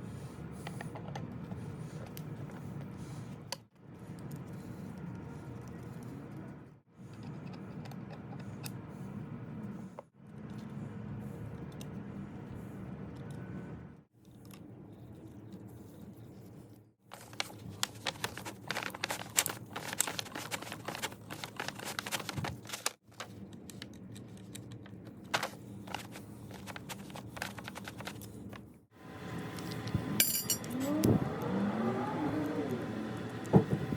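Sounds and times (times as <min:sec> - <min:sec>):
metal parts clicking and scraping: 0:29.6 - 0:31.0.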